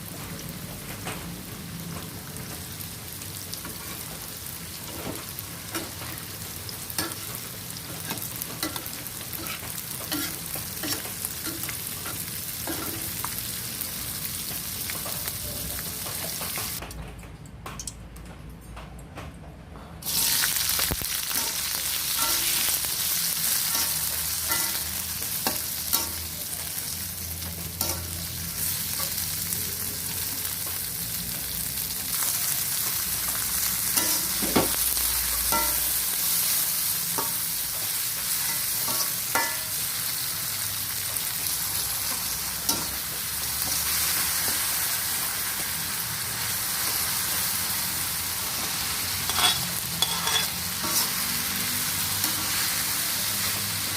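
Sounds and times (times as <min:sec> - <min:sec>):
food sizzling in hot oil: 0:01.4 - 0:16.8, 0:20.0 - 0:53.9
spatula scraping and knocking pan: 0:49.3 - 0:51.2.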